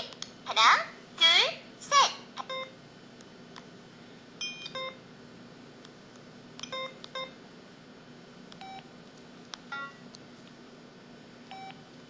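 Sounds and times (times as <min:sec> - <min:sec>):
mobile phone beeps: 0:08.6 - 0:08.8, 0:11.5 - 0:11.8.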